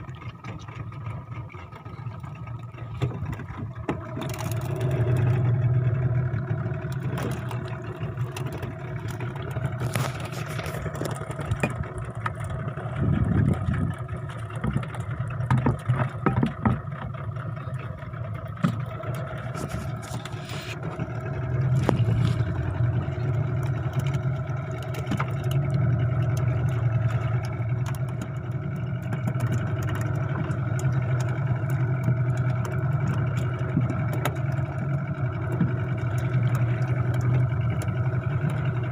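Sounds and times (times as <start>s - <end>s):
boat engine running: 0.0s - 38.9s
knocks and clatters: 14.6s - 17.1s.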